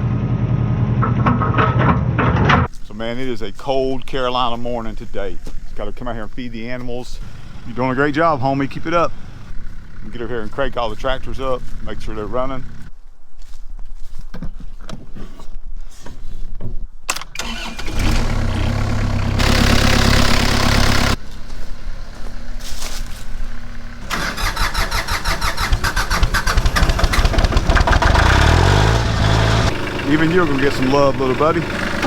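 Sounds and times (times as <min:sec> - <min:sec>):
tractor engine starting and running: 0:00.0 - 0:12.9, 0:17.1 - 0:32.0.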